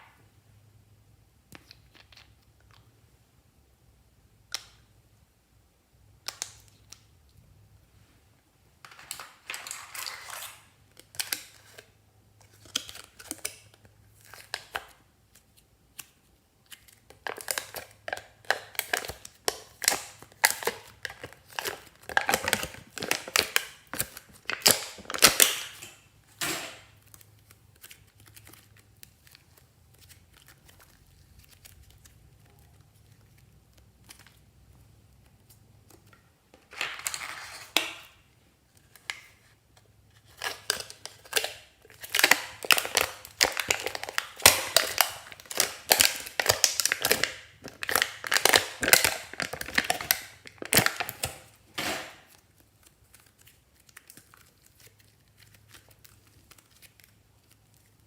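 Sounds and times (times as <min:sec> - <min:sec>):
slime crackling and popping: 0:14.4 - 0:25.9, 0:40.5 - 0:58.0.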